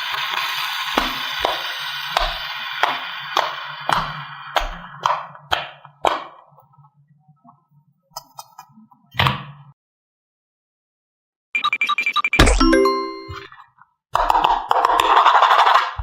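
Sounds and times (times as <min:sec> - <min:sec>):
bright chiming ding: 0:12.4 - 0:13.5.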